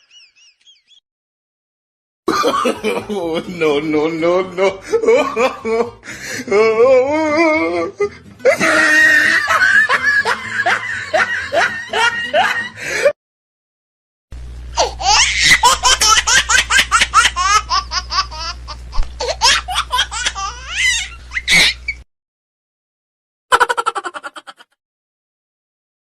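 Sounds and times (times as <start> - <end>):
hearty laughter: 2.3 - 3.6, 4.5 - 6.3, 8.0 - 13.2, 23.5 - 24.8
steady low hum: 14.4 - 22.0.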